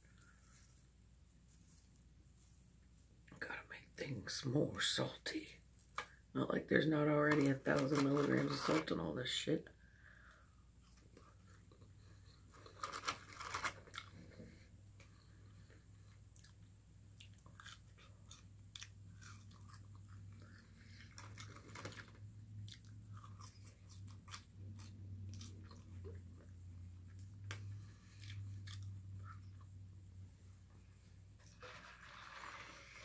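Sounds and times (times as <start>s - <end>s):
person chewing: 15.0s - 29.7s.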